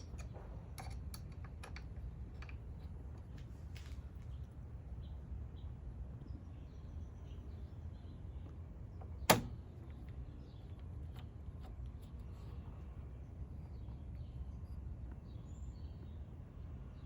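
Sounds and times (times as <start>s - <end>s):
sharp click: 9.3s - 9.6s.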